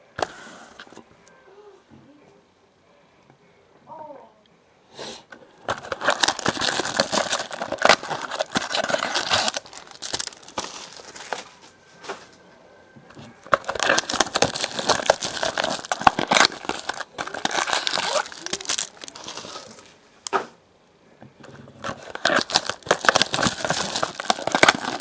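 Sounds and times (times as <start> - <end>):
plastic wrapping crinkling and tearing: 5.6 - 11.6, 13.2 - 20.0, 21.4 - 25.0.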